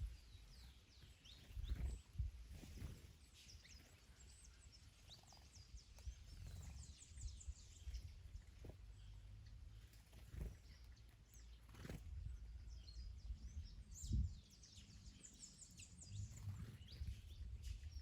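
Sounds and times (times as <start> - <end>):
wind on the microphone: 0.0 - 4.5, 5.8 - 8.8, 11.7 - 15.2, 16.0 - 18.0
small songbirds chirping: 0.0 - 18.0.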